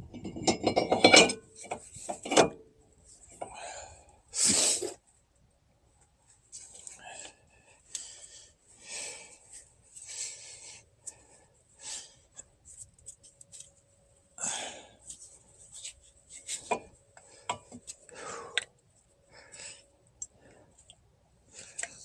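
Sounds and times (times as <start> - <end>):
metal tools clicking and knocking: 0.1 - 2.6.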